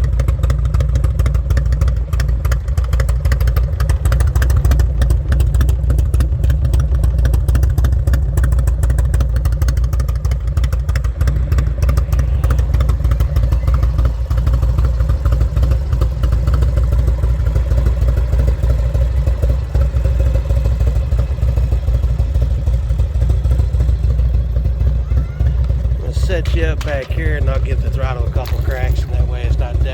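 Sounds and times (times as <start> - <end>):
motorcycle engine idling: 0.0 - 29.9.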